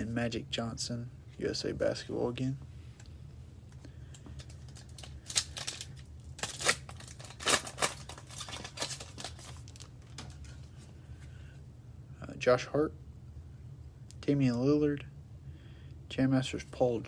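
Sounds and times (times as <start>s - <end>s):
steady low hum: 0.0s - 17.0s
wrapper tearing and crinkling: 4.4s - 10.5s.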